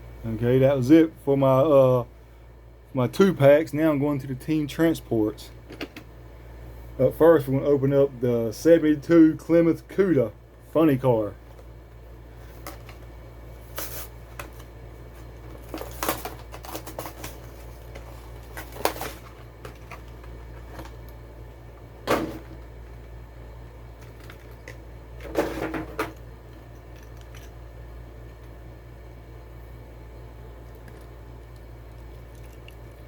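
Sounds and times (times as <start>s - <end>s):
steady low hum: 0.0s - 33.0s
packaging clicking and rustling: 15.4s - 21.1s.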